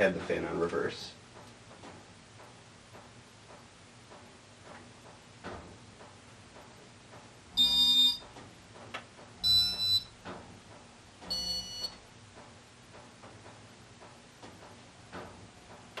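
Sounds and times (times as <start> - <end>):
electronic beeps: 7.6 - 8.2, 9.4 - 10.1, 11.3 - 12.0.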